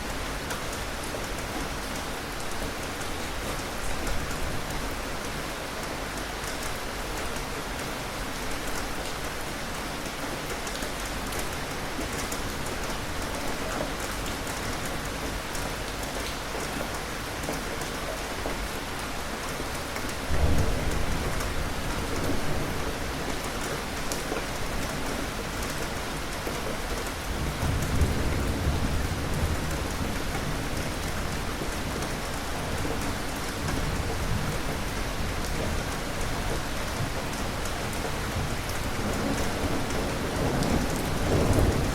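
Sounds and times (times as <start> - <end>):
steady rain falling: 0.0 - 41.9
thunder rumbling: 27.3 - 41.9.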